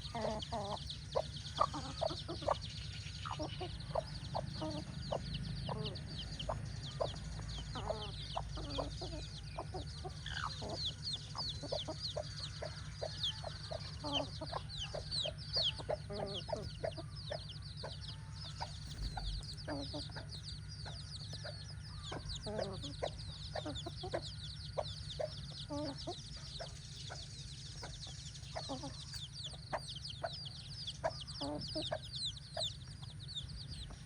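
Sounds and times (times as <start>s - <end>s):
chicks peeping: 0.0s - 34.0s
hen clucking: 0.0s - 34.0s
low hum: 16.6s - 23.4s.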